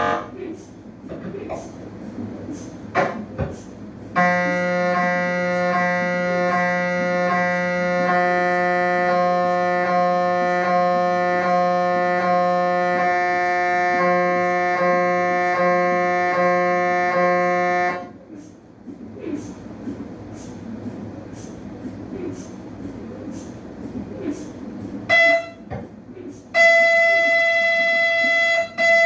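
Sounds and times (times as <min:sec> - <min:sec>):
mri scanner buzzing: 0:00.0 - 0:00.4, 0:04.1 - 0:18.2
faint beat: 0:00.0 - 0:29.0.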